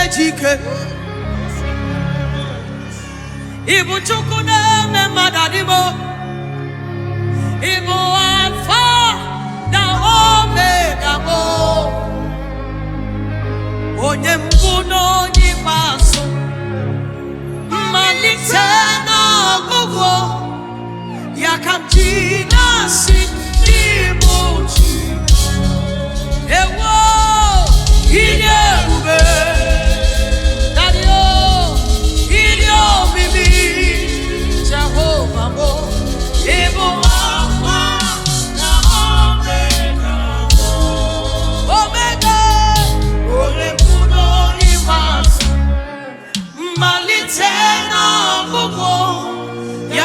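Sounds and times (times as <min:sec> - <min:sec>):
steady drum beat: 0:14.5 - 0:16.3, 0:21.9 - 0:45.7
person singing with vibrato: 0:17.7 - 0:50.0
band with heavy bass: 0:22.0 - 0:45.8.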